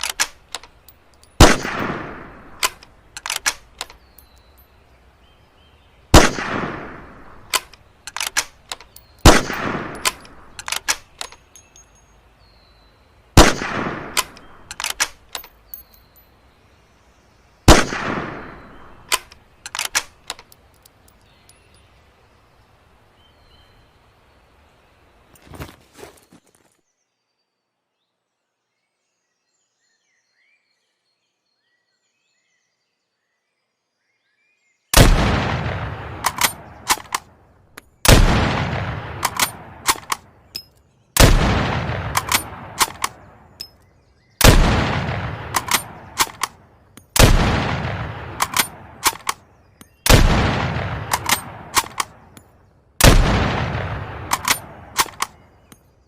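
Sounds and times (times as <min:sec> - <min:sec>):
rifle bolt clicking: 0:00.0 - 0:01.8, 0:02.6 - 0:04.4, 0:07.4 - 0:11.6, 0:14.1 - 0:15.9, 0:19.1 - 0:21.2, 0:36.2 - 0:37.9, 0:39.2 - 0:40.8, 0:42.1 - 0:43.8, 0:45.5 - 0:47.3, 0:48.4 - 0:50.1, 0:51.1 - 0:52.5, 0:54.3 - 0:55.8
rifle shots: 0:01.4 - 0:03.9, 0:06.1 - 0:11.1, 0:13.4 - 0:15.3, 0:17.7 - 0:20.2, 0:35.0 - 0:37.3, 0:38.0 - 0:40.3, 0:41.2 - 0:43.4, 0:44.4 - 0:49.4, 0:50.0 - 0:52.3, 0:53.0 - 0:55.4.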